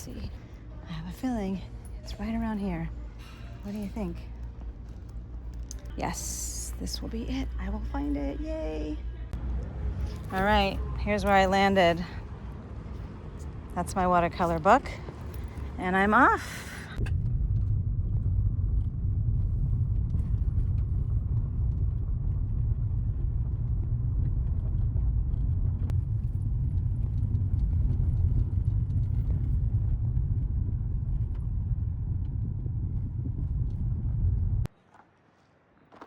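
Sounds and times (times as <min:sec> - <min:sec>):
car road rumble from inside: 0:07.1 - 0:16.4, 0:17.0 - 0:34.7.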